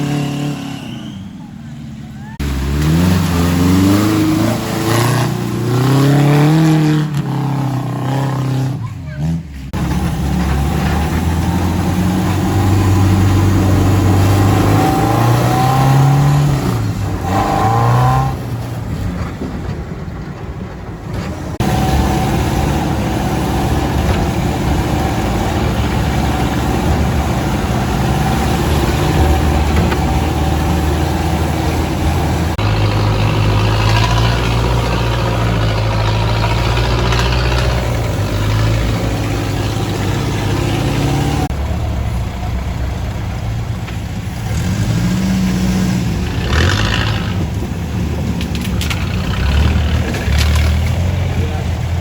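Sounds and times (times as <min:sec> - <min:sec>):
off-road engines revving: 0:00.0 - 0:52.0.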